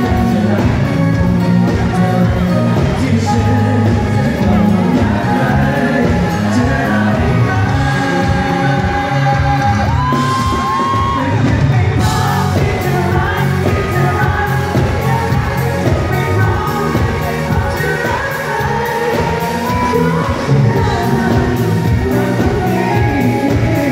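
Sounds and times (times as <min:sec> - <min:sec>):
live pop song with band: 0:00.0 - 0:23.9
crowd yelling and whooping: 0:07.3 - 0:23.9.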